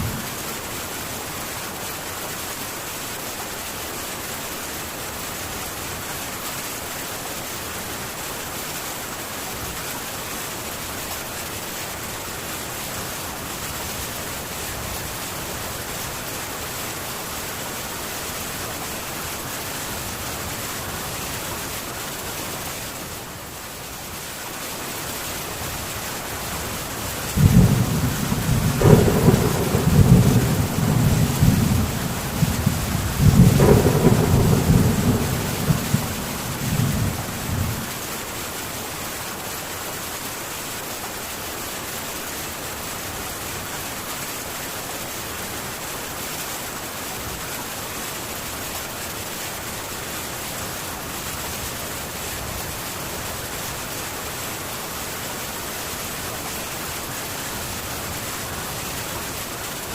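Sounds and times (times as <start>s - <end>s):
heavy rain on a tin roof: 0.0s - 59.9s
thunder rumble: 27.4s - 38.0s.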